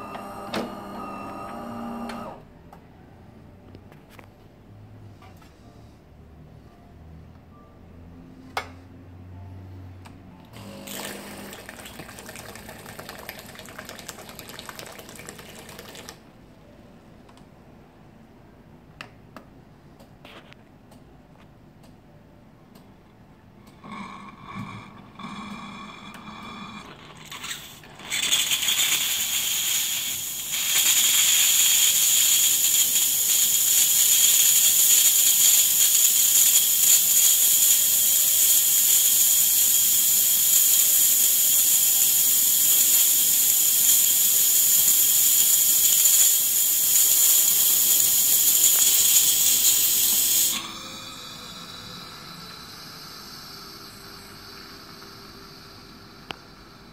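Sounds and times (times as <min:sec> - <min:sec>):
coffee machine steam wand hissing: 0:23.8 - 0:56.9.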